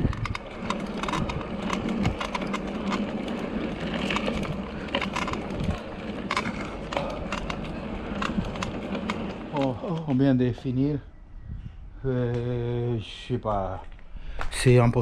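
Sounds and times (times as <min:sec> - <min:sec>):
wind noise: 0:00.0 - 0:03.0, 0:04.1 - 0:05.9, 0:11.0 - 0:13.0
tyre noise: 0:00.0 - 0:10.4
bicycle suspension squeaking: 0:00.0 - 0:11.2.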